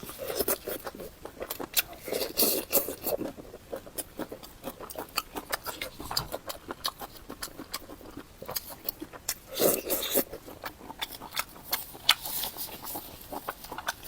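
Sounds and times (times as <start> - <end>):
person chewing and lip-smacking: 0.0 - 14.0.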